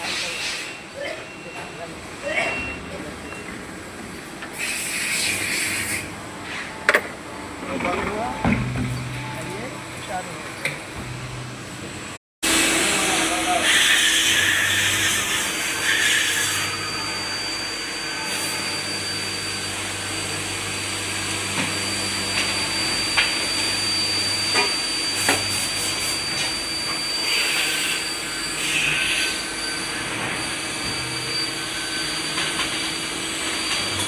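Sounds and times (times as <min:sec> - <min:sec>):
cnc machine whining: 0:06.8 - 0:34.0.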